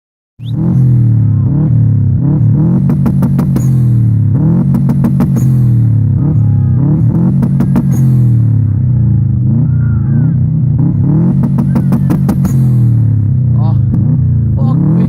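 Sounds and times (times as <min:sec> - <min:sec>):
loud music with sliding bass: 0:00.4 - 0:15.0.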